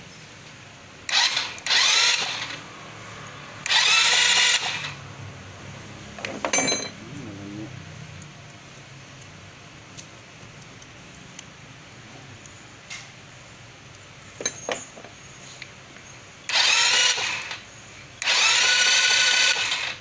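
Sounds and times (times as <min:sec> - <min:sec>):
handheld power tool running: 0:01.1 - 0:02.6, 0:03.6 - 0:04.9, 0:16.5 - 0:17.6, 0:18.2 - 0:20.0.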